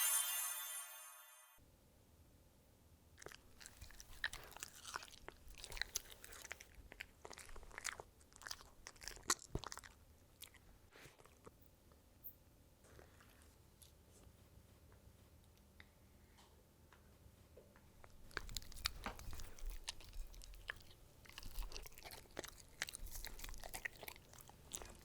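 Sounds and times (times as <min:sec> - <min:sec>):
dog chewing crunchy food: 0:03.2 - 0:11.6, 0:18.1 - 0:25.0.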